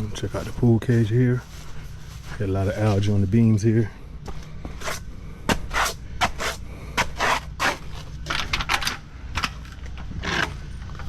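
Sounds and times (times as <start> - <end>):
steady low hum: 0.0 - 11.0
footsteps clicking and scuffing: 4.2 - 8.2.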